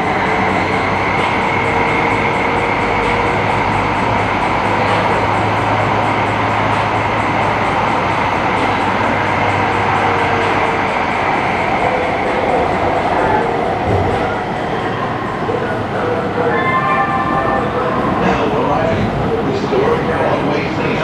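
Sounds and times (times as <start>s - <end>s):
train wheels rumbling on rail: 0.0s - 16.6s.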